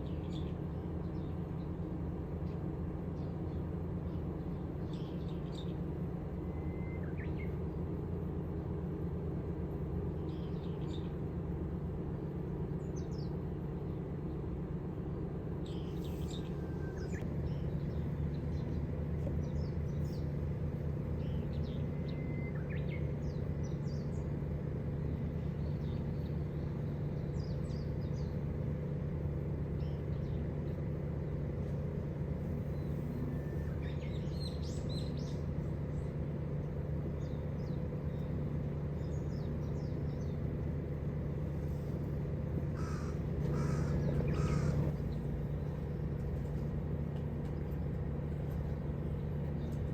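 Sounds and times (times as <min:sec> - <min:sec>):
steady low hum: 0:00.0 - 0:49.9
wild birds calling: 0:15.6 - 0:46.5.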